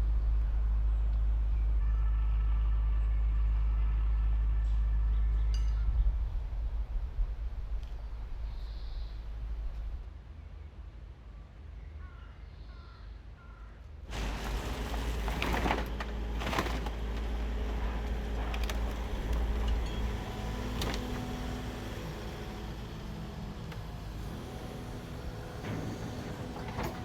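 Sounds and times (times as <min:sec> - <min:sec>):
low rumble: 0:00.0 - 0:10.2
knocks and clatters: 0:14.1 - 0:21.6.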